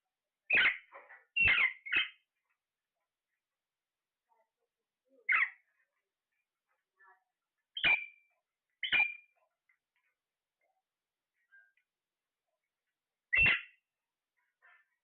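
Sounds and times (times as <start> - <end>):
parrot squawking: 0.5 - 2.2, 8.8 - 9.2, 13.3 - 13.8.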